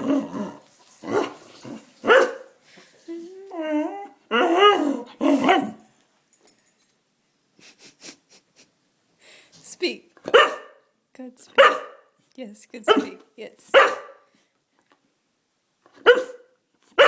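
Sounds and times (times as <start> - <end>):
dog yelping and barking: 0.0 - 2.5, 3.7 - 5.8, 10.3 - 10.8, 11.6 - 12.0, 12.9 - 14.2, 16.0 - 17.0
dog whining: 3.1 - 5.8.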